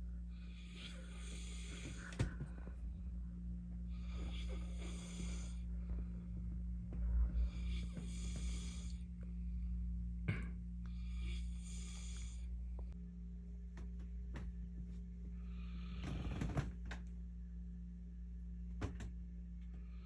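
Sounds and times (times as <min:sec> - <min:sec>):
steady low hum: 0:00.0 - 0:20.0
man snoring heavily: 0:00.3 - 0:02.8, 0:03.9 - 0:05.7, 0:07.2 - 0:09.1, 0:10.3 - 0:12.5, 0:15.5 - 0:16.8.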